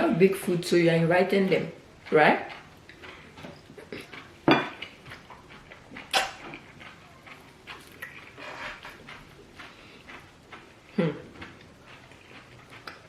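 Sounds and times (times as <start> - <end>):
dishes clinking: 3.4 - 4.9.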